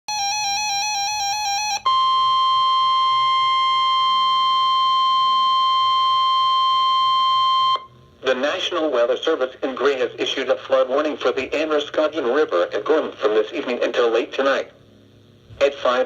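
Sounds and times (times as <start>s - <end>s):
high-pitched alarm tone: 0.1s - 7.9s.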